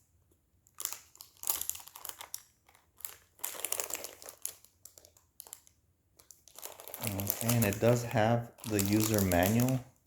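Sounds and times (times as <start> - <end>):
packaging wrap crinkling: 0.6 - 10.0.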